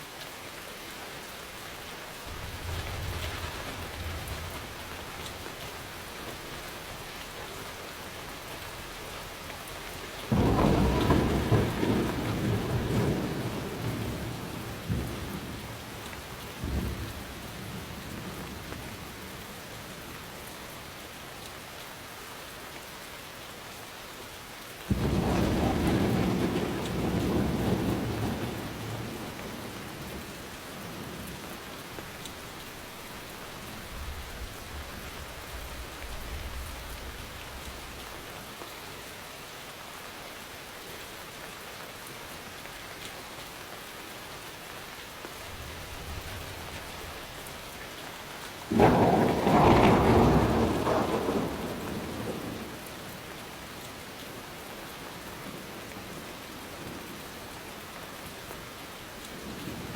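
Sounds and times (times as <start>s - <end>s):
steady rain falling: 0.0s - 59.9s
thunder rumbling: 2.2s - 7.9s, 10.2s - 19.4s, 24.9s - 38.1s, 48.6s - 53.1s
loud thunderclap: 10.3s - 15.7s, 24.9s - 30.2s, 48.7s - 52.8s.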